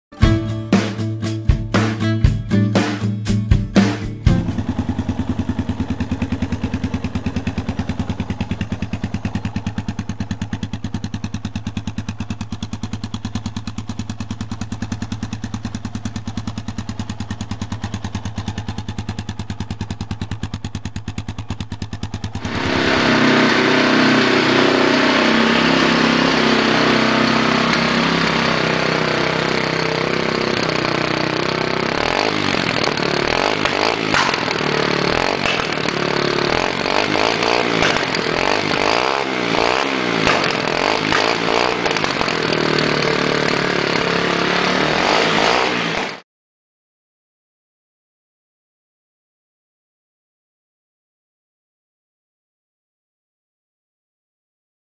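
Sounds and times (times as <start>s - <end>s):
motorcycle engine idling and revving: 0.2s - 46.2s.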